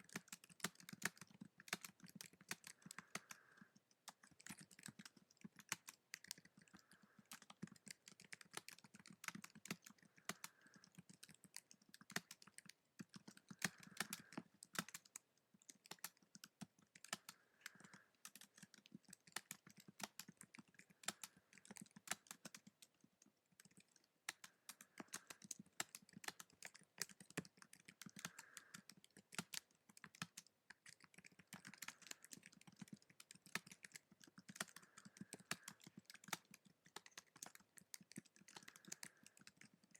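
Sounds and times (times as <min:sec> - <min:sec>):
typing on a keyboard: 0:00.0 - 0:39.9.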